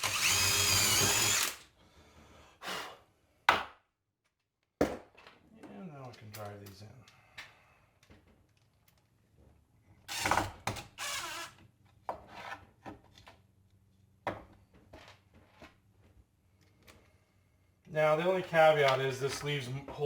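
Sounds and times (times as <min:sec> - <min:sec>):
power drill driving screws: 0:00.0 - 0:01.7, 0:10.1 - 0:11.6.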